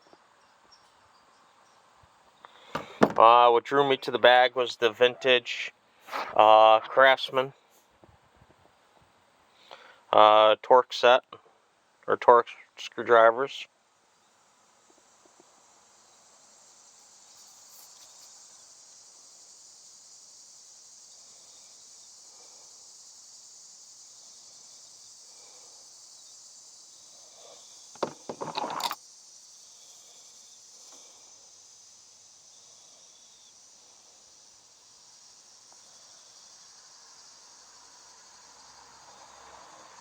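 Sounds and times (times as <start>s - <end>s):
steady high hiss: 0.0s - 40.0s
hand tools clattering: 28.0s - 29.0s.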